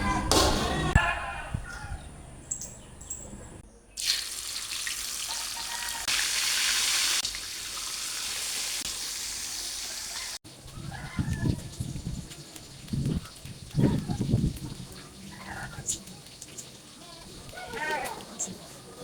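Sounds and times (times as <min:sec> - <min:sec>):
food sizzling in hot oil: 0:04.0 - 0:10.4.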